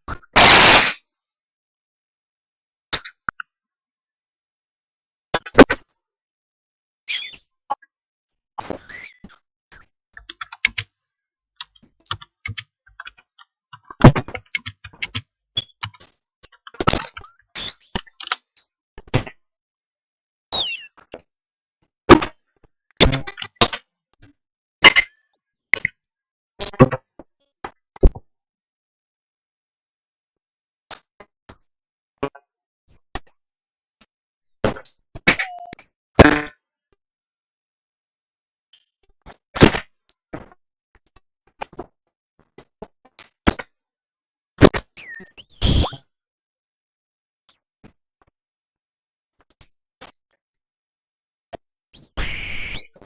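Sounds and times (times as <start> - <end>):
glitchy bursts and clicks: 0.4 - 1.0, 52.2 - 53.0
sharp cracks: 0.4 - 1.0.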